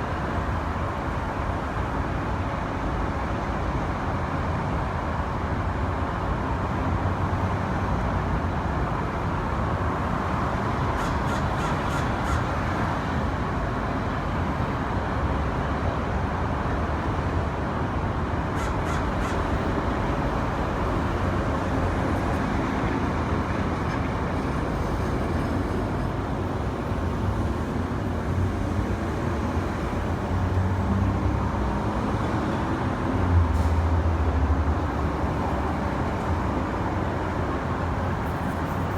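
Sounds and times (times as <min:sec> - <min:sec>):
road traffic hum: 0:00.0 - 0:38.9
crows cawing: 0:11.0 - 0:12.6, 0:18.6 - 0:19.5.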